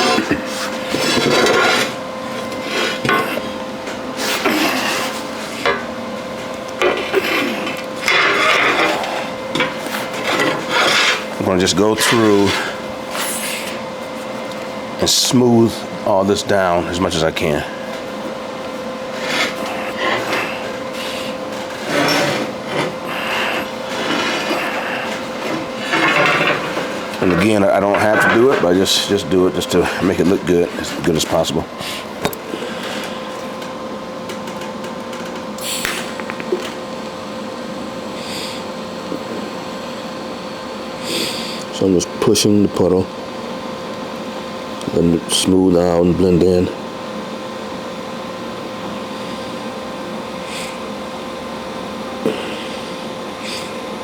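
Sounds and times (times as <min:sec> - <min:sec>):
steel clanking and scraping: 0:00.0 - 0:11.4, 0:19.1 - 0:23.0, 0:23.6 - 0:31.2
welding machine hum: 0:00.0 - 0:54.0.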